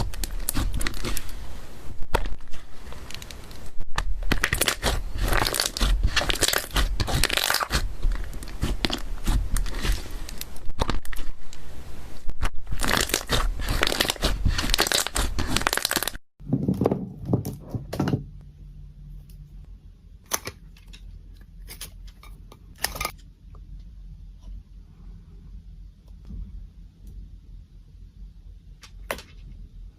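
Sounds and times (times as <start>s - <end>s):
slime crackling and popping: 0.0s - 1.4s, 2.1s - 11.5s, 12.4s - 16.2s.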